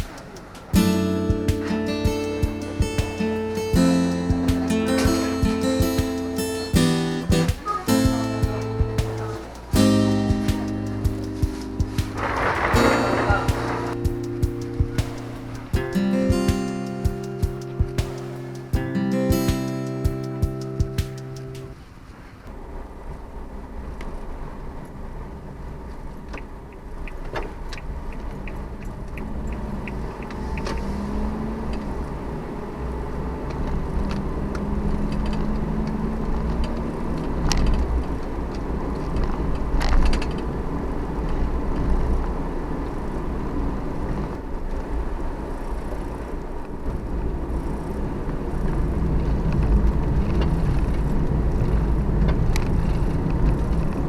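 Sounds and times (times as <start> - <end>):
van engine and road noise: 0.0 - 18.8, 19.9 - 54.0.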